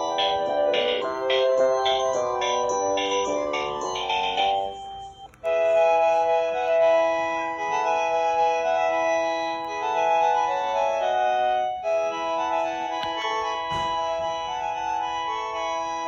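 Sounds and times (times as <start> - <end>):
electronic phone ringtone melody: 0.0 - 16.0.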